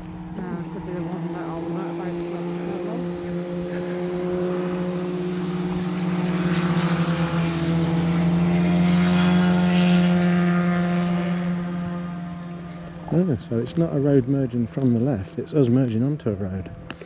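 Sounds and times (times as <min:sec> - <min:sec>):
engine drone: 0:00.0 - 0:17.0.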